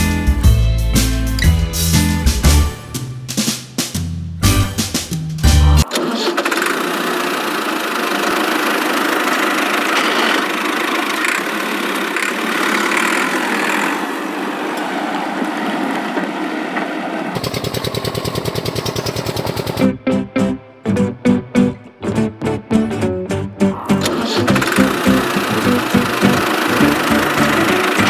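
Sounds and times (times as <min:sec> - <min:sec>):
electric water pump whirring: 0:17.4 - 0:19.8, 0:24.5 - 0:28.0
rapid even rattling: 0:17.4 - 0:19.8.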